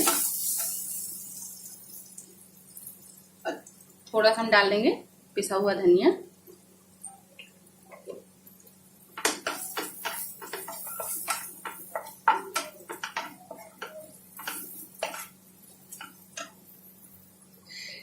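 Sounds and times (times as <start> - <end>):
spatula scraping a frying pan: 0.0 - 2.0, 9.3 - 17.0
vegetables frying: 0.0 - 4.9, 6.3 - 17.9.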